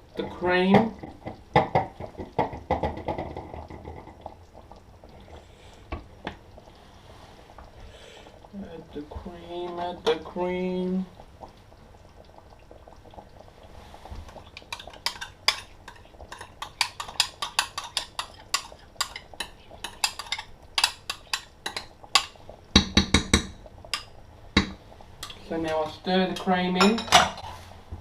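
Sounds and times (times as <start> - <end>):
spoon knocking against pot: 14.7 - 24.8.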